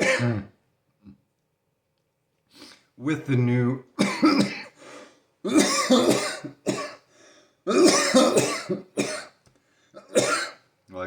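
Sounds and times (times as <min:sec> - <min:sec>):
man coughing: 0:00.0 - 0:00.5, 0:04.0 - 0:04.8, 0:05.4 - 0:07.1, 0:07.7 - 0:09.4, 0:10.0 - 0:10.6
short breaths: 0:04.7 - 0:05.3, 0:07.0 - 0:07.7, 0:09.6 - 0:10.0.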